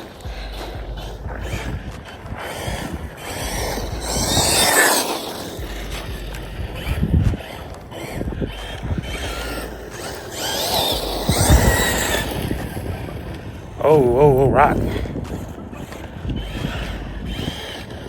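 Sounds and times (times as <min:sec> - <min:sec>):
electric motor whining: 0:00.0 - 0:18.0
wind on microphone: 0:00.0 - 0:18.0.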